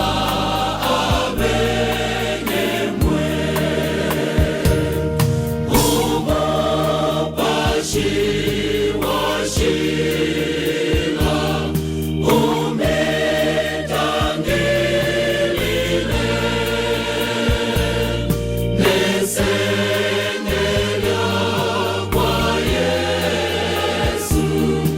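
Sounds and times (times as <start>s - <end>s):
choir singing gospel: 0.0s - 24.9s
instrumental accompaniment with bass: 0.0s - 24.9s.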